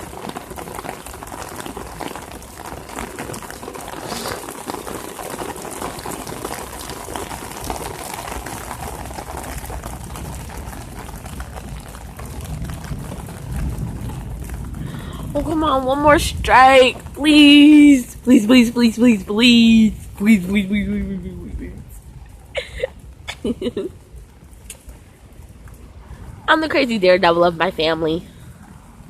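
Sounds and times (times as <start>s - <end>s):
rain drops hitting close: 0.0s - 29.0s
low rumble: 9.3s - 29.0s.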